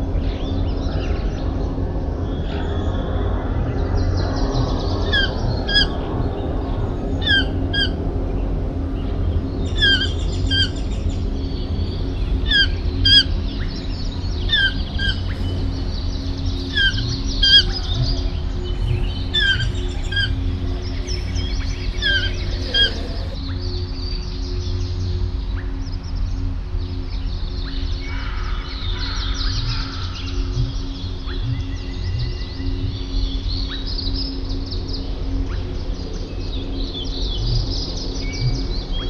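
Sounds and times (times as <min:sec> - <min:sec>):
steady low rumble: 0:00.0 - 0:39.0
bird calling downward-sliding notes: 0:02.2 - 0:23.6, 0:36.6 - 0:39.0.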